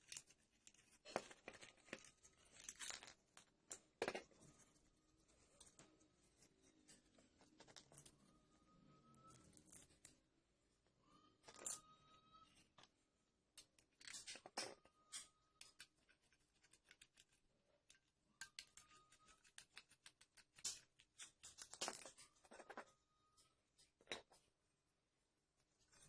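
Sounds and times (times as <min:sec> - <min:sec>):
thin squeak: 0:07.4 - 0:10.0, 0:11.0 - 0:12.7, 0:18.4 - 0:19.8.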